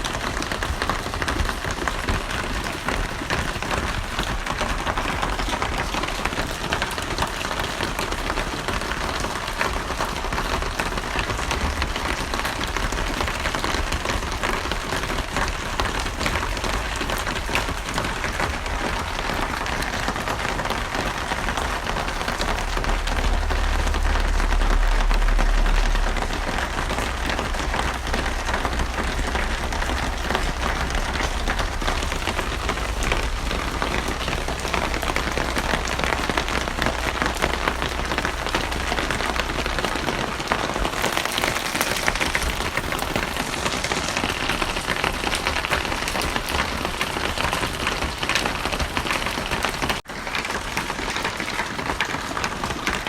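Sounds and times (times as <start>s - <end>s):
heavy rain falling: 0.0s - 53.0s
low rumble: 9.4s - 46.7s.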